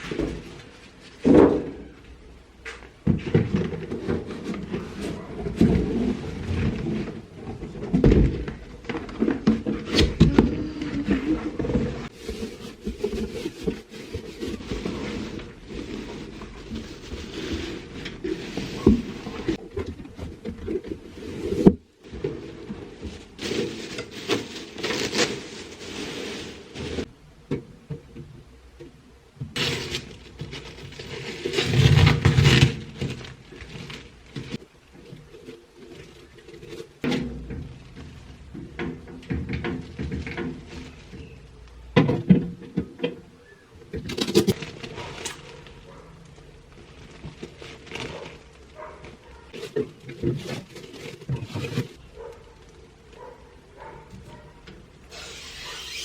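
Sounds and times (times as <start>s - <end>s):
thunks and knocks of handling: 0.0s - 25.6s, 26.8s - 45.3s
cardboard scraping: 3.0s - 27.2s, 29.6s - 38.3s, 46.9s - 52.5s, 53.2s - 56.0s.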